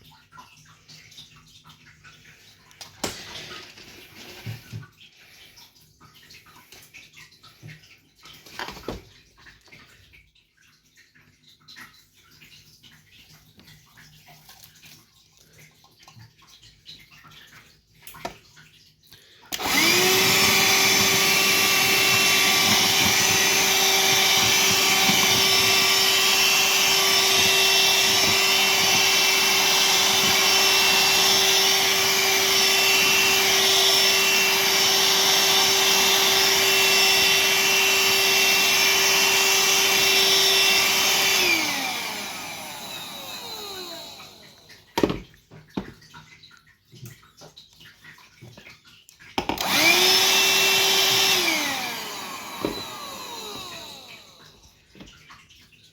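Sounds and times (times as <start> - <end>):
cordless vacuum cleaner running: 19.5 - 45.1, 49.5 - 54.6.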